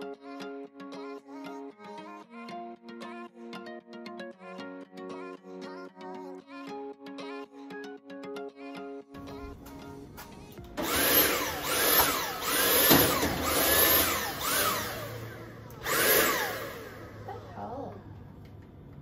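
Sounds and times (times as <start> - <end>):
vacuum cleaner motor stuttering: 10.8 - 17.5.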